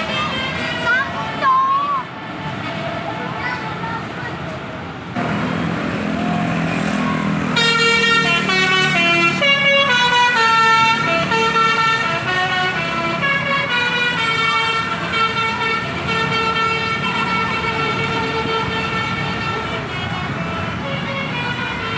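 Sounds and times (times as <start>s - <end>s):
musical air horn: 7.4s - 21.9s.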